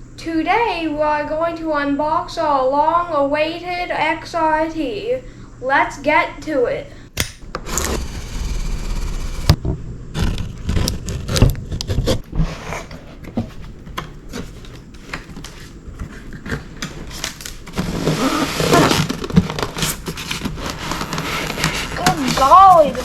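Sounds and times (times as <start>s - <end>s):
packaging rustling and crackling: 16.4s - 23.0s
cardboard box scraping and clicking: 17.2s - 23.0s.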